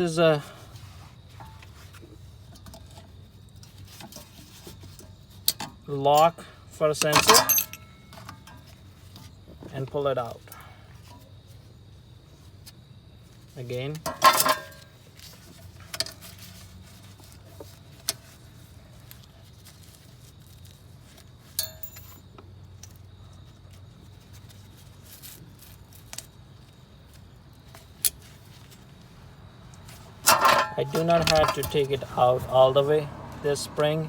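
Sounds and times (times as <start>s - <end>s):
metallic clinks of tools: 7.1s - 8.6s, 21.6s - 22.3s, 30.3s - 31.9s.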